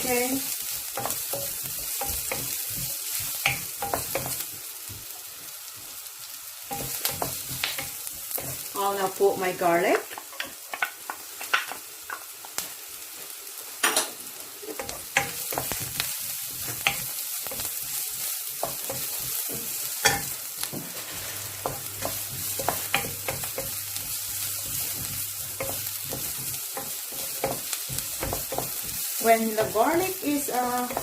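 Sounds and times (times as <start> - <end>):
garlic and onions sizzling in oil: 0.0 - 31.0
utensil scraping a frying pan: 14.8 - 31.0.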